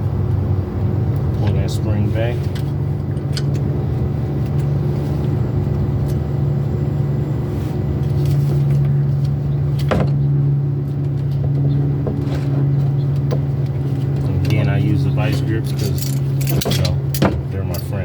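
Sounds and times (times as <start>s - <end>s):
low mechanical drone: 0.0s - 18.0s.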